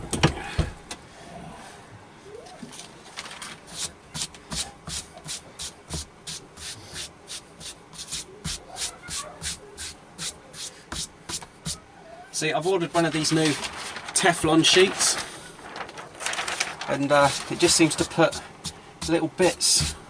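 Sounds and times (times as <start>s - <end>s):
clatter of handling: 2.5s - 3.6s, 14.9s - 16.9s
rubbing strokes on fabric: 3.7s - 11.8s.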